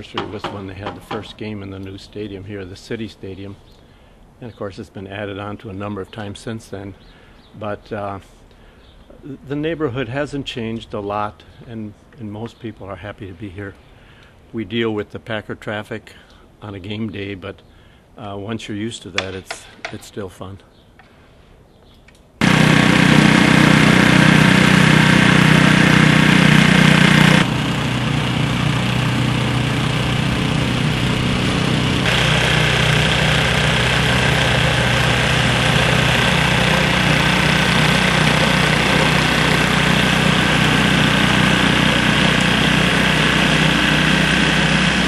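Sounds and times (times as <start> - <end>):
snowblower engines running: 0.0 - 2.2, 22.4 - 45.0.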